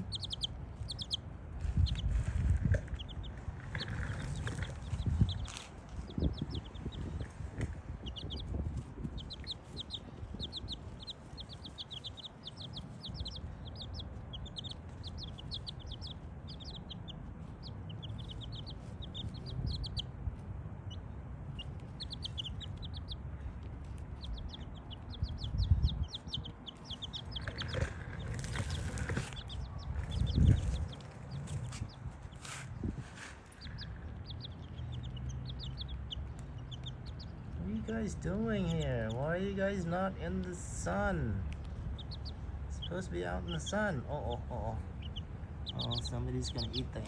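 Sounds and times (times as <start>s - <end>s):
rustle: 0.0s - 6.2s, 26.1s - 35.2s
chicks peeping: 0.0s - 47.0s.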